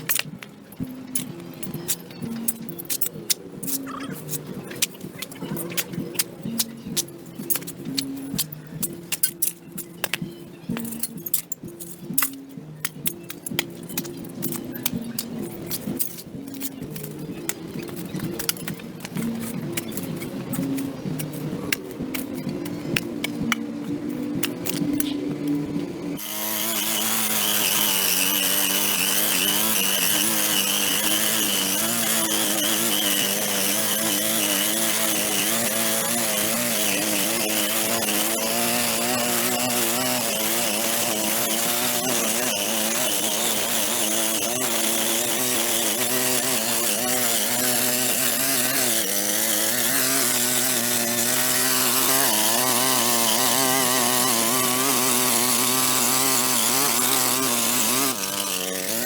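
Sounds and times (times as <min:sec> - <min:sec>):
small petrol engine at high revs: 0:26.2 - 0:59.0.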